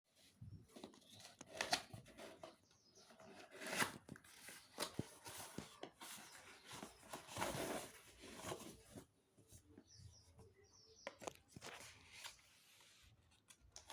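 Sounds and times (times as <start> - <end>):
packaging rustling and tearing: 3.2 - 9.0.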